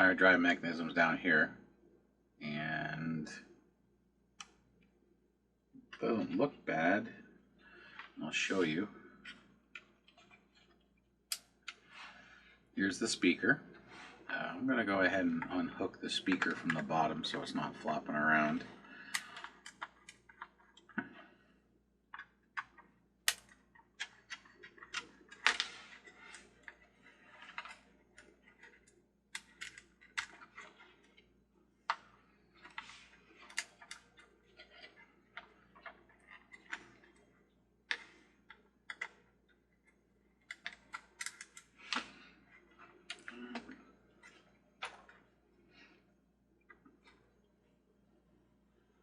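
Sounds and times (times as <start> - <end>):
hands and tool clicking on plastic: 19.0 - 21.3, 22.2 - 37.3, 37.9 - 45.2.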